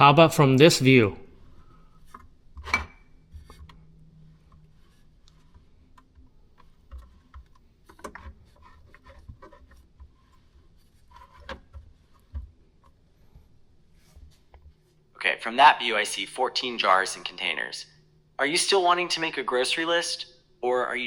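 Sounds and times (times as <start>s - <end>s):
faint handling clicks and knocks: 3.3s - 14.9s.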